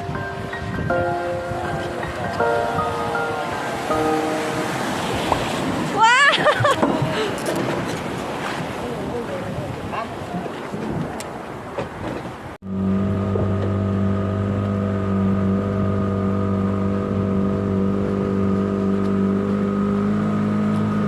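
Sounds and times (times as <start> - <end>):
wind and water rushing: 0.0 - 21.0
boat engine running: 12.6 - 21.0.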